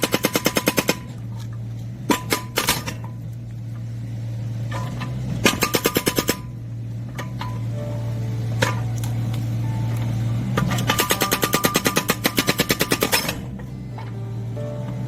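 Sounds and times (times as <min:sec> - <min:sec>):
hydraulic breaker hammering wood: 0:00.0 - 0:01.2, 0:02.0 - 0:03.2, 0:04.8 - 0:06.6, 0:10.6 - 0:13.6
excavator engine running: 0:00.0 - 0:15.0.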